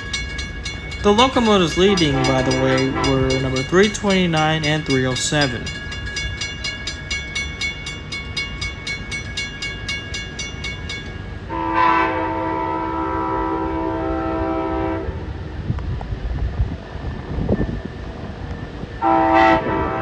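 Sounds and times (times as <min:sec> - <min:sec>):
bell ringing rapidly: 0:00.0 - 0:11.3
passing train rumble: 0:00.0 - 0:20.0
locomotive horn: 0:01.1 - 0:04.0, 0:11.5 - 0:15.5, 0:19.0 - 0:20.0.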